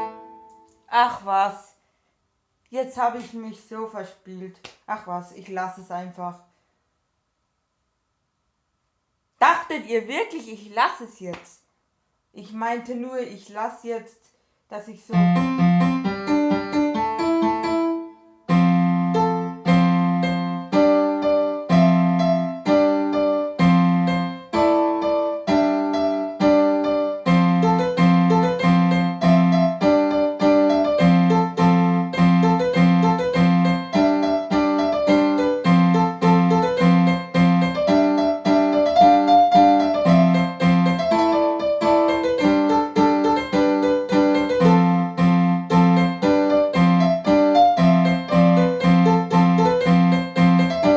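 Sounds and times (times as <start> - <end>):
electronic keyboard piano chords: 0.0 - 0.9, 15.2 - 50.9.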